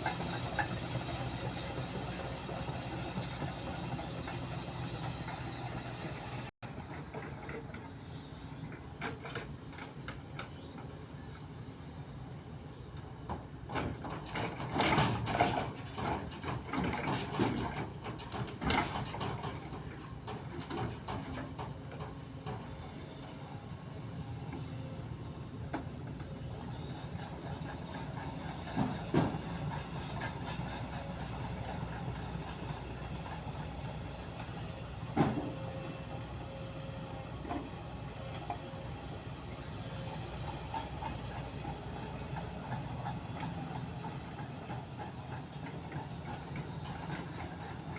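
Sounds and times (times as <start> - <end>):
diesel engine running: 0.0 - 6.5.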